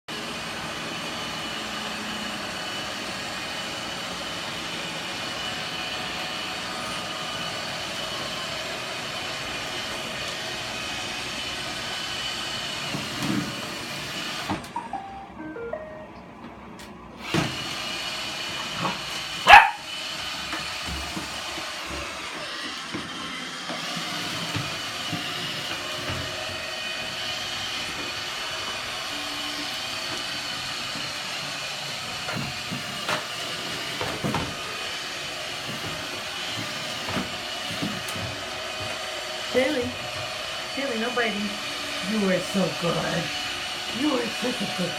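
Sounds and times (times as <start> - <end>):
robot vacuum whirring: 17.2 - 44.9
puppy yipping: 19.5 - 19.8.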